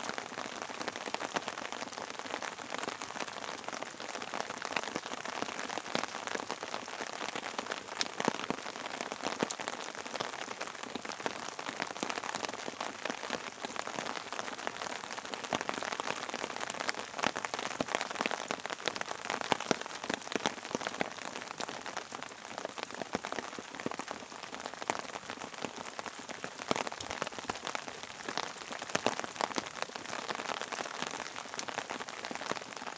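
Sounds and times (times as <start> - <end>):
steady rain: 0.0 - 32.9
raindrops ticking: 24.8 - 32.8.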